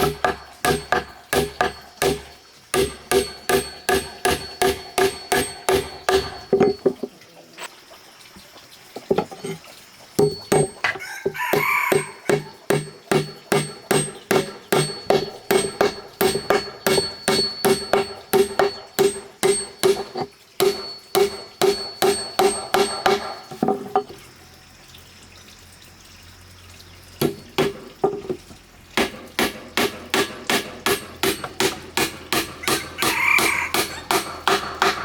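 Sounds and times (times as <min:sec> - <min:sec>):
rhythmic hammering with ringing: 0:00.0 - 0:07.0, 0:10.2 - 0:24.1, 0:27.2 - 0:28.1, 0:29.0 - 0:35.0.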